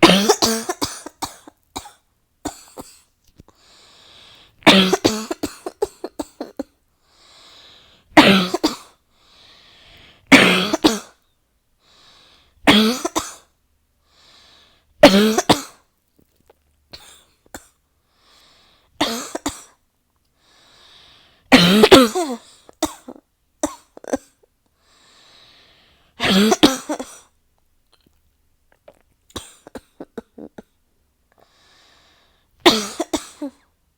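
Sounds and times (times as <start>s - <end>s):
person coughing: 0.0s - 3.0s, 4.6s - 6.8s, 8.2s - 8.9s, 10.3s - 11.2s, 12.7s - 13.4s, 15.0s - 15.8s, 19.0s - 19.8s, 21.5s - 24.4s, 26.2s - 27.3s, 29.3s - 30.8s, 32.6s - 33.7s
quiet breath in: 3.5s - 4.6s, 7.0s - 8.2s, 9.1s - 10.3s, 11.8s - 12.6s, 14.0s - 15.0s, 18.0s - 19.0s, 20.3s - 21.5s, 24.7s - 26.2s, 31.3s - 32.6s.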